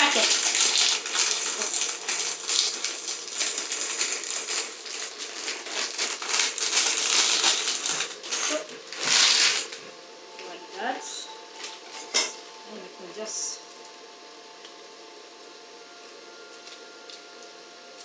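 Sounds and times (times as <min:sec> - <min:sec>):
plastic packets crinkling: 0:00.0 - 0:09.9.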